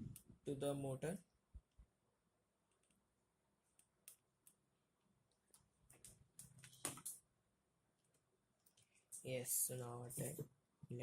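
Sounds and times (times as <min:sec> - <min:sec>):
faint clicks and taps: 0:02.7 - 0:03.0, 0:05.2 - 0:07.2, 0:08.0 - 0:09.3.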